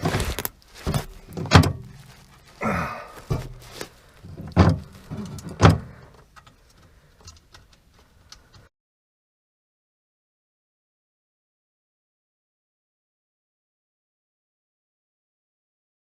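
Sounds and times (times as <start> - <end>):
metal knocks and clunks: 0.0 - 2.2, 3.2 - 6.2
scraping rattle: 3.2 - 6.2.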